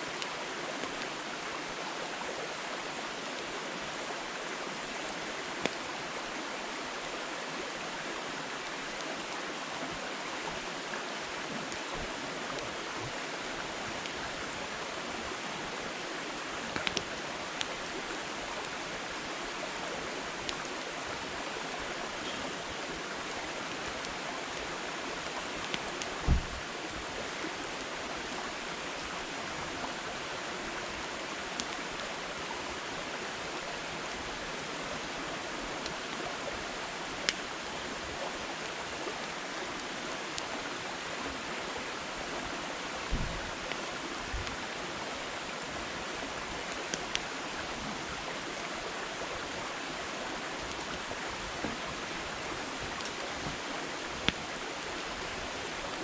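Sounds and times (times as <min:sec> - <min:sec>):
wood fire crackling and popping: 0:11.6 - 0:19.6, 0:20.3 - 0:28.4, 0:30.8 - 0:34.2, 0:37.0 - 0:40.5, 0:50.4 - 0:56.0.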